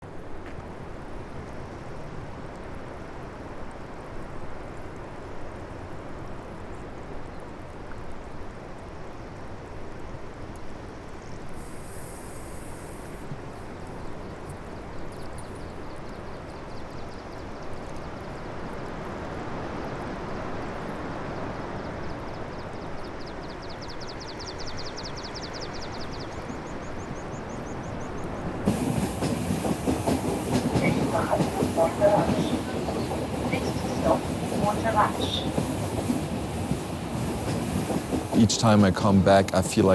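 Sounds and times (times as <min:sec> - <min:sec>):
passenger train rumbling: 0:24.9 - 0:39.9.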